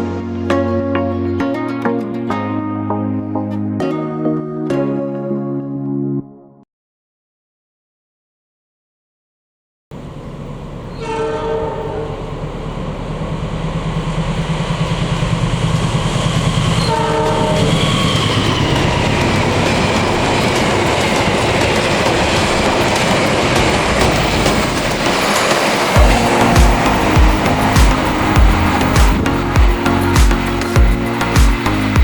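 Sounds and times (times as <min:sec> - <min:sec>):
train wheels rumbling on rails: 0:10.0 - 0:32.0
train horn: 0:10.8 - 0:13.1, 0:16.0 - 0:20.6, 0:26.0 - 0:30.0.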